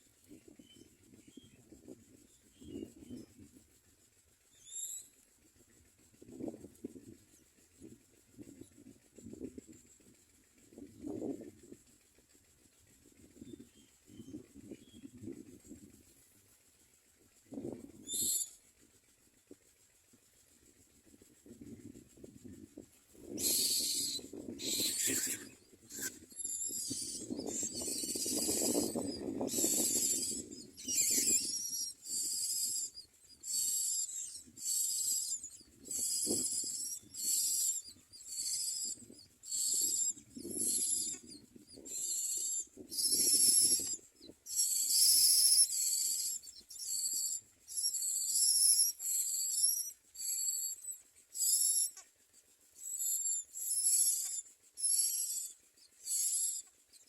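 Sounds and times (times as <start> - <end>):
nestlings begging with hissy calls: 18.1 - 18.5, 23.3 - 52.0, 52.8 - 57.0.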